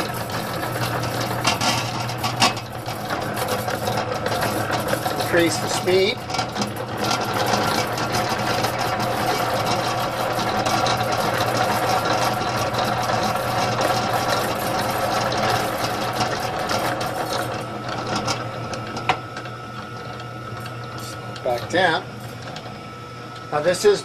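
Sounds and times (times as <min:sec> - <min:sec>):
stand mixer whirring: 0:00.0 - 0:24.0.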